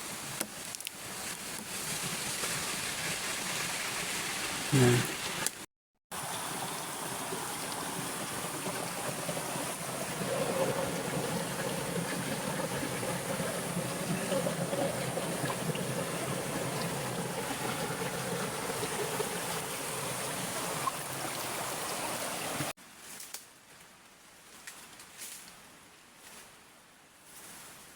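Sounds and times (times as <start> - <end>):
running water rushing: 0.0 - 22.8
faint hiss and rustle: 22.8 - 27.9.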